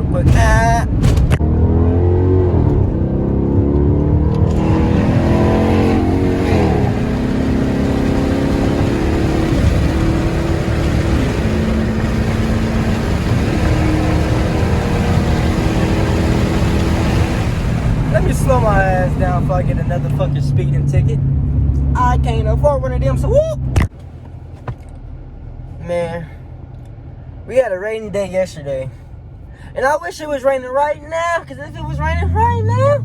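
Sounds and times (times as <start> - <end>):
vee eight engine accelerating hard: 1.3 - 23.9, 31.1 - 33.0.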